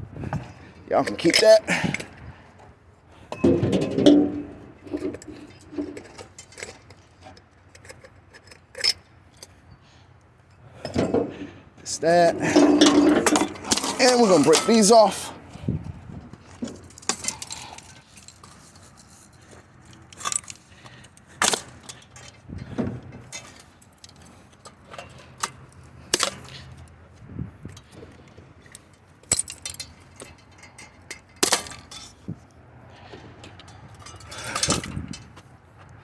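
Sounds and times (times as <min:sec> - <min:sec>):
scrap metal clinks and snaps: 0:03.3 - 0:09.6, 0:16.4 - 0:26.9, 0:27.7 - 0:32.3, 0:33.4 - 0:35.4.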